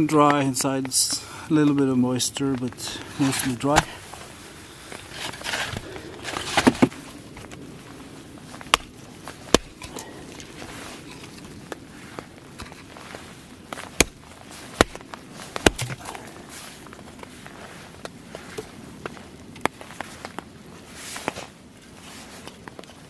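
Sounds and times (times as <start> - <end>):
rustling: 0.0 - 23.0
steady background hiss: 0.0 - 23.0
sharp cracks or knocks: 8.6 - 10.1, 13.7 - 16.2.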